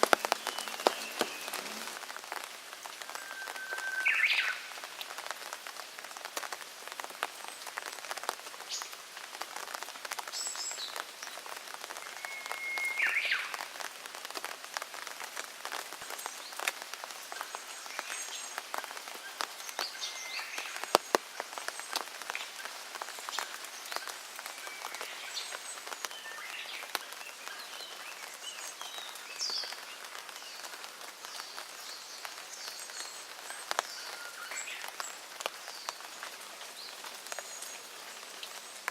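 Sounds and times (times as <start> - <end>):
small birds chirping: 0.0 - 2.3, 16.0 - 38.9
rain falling: 0.0 - 38.9.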